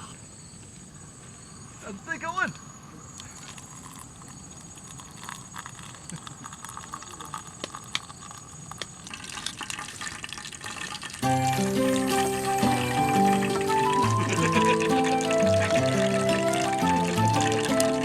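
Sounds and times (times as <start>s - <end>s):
background music: 11.2s - 18.0s
high insect drone: 11.2s - 18.0s.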